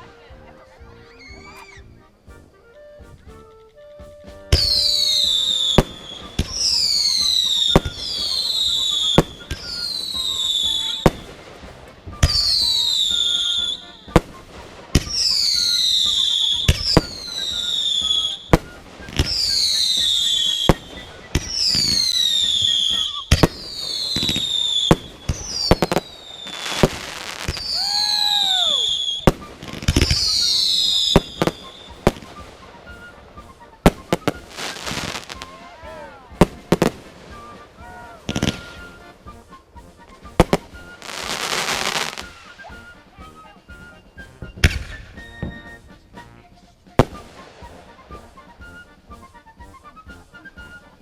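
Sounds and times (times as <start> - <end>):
firework pops: 3.1 - 33.2, 33.8 - 39.0, 40.0 - 42.6, 44.4 - 46.3, 46.9 - 48.7
firework whistles and bangs: 4.3 - 46.2, 46.9 - 49.2.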